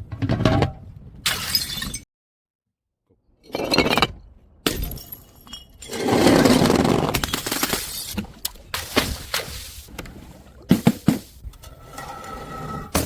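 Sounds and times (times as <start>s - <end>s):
glass bottles breaking: 3.6s - 8.2s.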